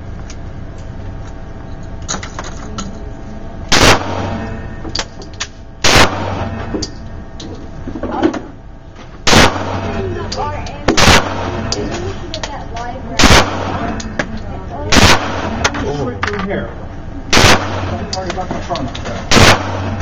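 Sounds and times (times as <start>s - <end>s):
pistol shots: 3.7s - 4.5s, 5.8s - 6.6s, 9.2s - 10.0s, 10.9s - 11.8s, 13.2s - 14.1s, 14.9s - 15.8s, 17.3s - 18.2s, 19.3s - 20.0s.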